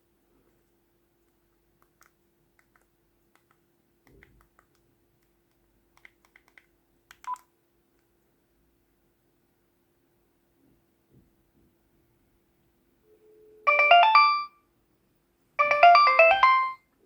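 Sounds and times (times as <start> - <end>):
phone keypad beeps: 13.7 - 14.5, 15.6 - 16.8.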